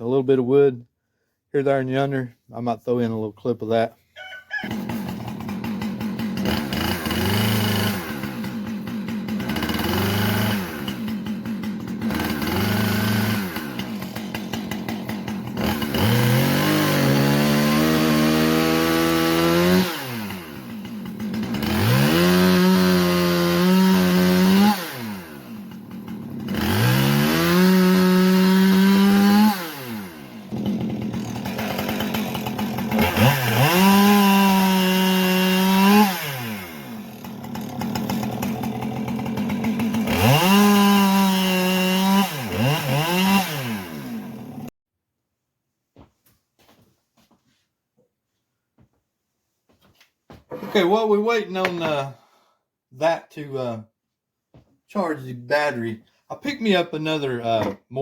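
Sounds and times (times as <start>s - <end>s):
chainsaw cutting wood: 4.5s - 44.7s, 50.6s - 52.1s.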